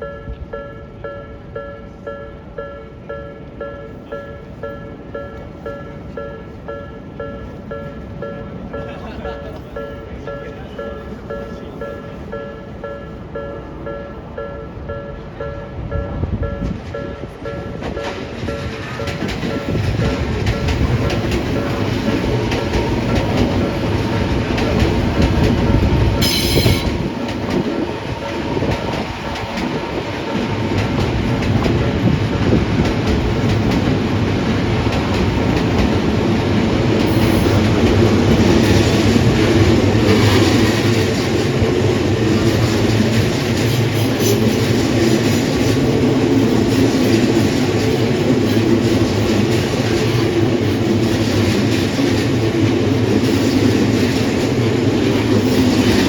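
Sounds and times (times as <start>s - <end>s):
train wheels clattering over rail joints: 16.6s - 56.0s.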